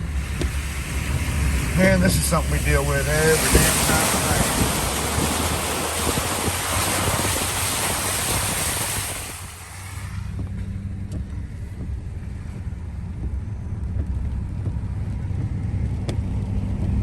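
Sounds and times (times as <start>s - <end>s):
water spraying under car: 0.0s - 10.8s
car cabin hum: 0.0s - 15.5s.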